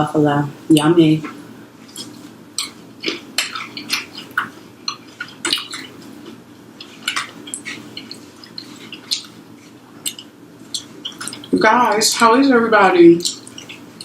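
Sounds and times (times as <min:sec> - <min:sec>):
close chewing of fried food: 0:01.4 - 0:11.6, 0:13.2 - 0:14.0.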